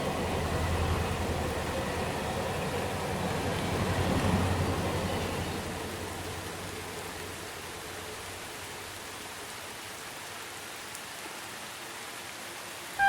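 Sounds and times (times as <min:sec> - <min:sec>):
passing train rumble: 0:00.0 - 0:09.5
steady rain falling: 0:00.0 - 0:13.0.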